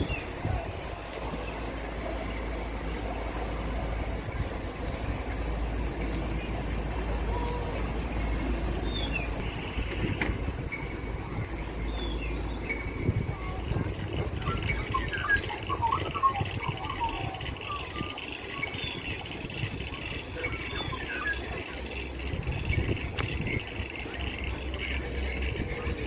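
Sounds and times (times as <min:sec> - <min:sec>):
low outdoor rumble: 0:00.0 - 0:26.0
bird chirps: 0:03.2 - 0:22.0.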